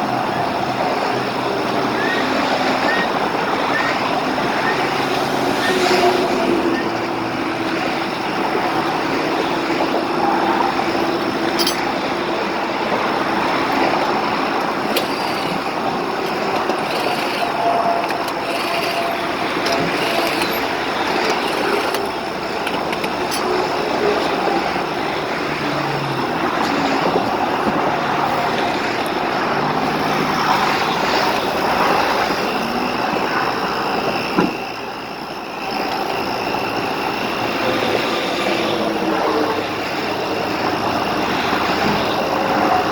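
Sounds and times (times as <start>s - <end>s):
passing highway traffic: 0.0s - 42.9s.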